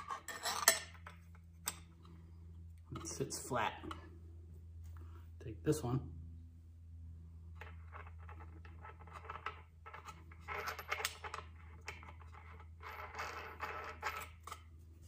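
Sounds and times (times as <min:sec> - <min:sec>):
metal parts clicking and scraping: 0:00.0 - 0:02.2, 0:07.6 - 0:14.7
faint low hum: 0:00.0 - 0:15.0.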